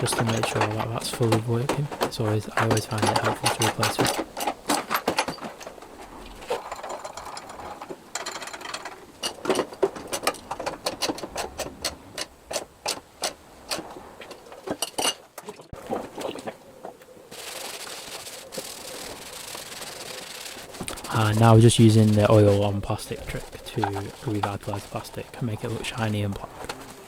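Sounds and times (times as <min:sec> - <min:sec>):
rubbing hiss: 0:17.3 - 0:27.0.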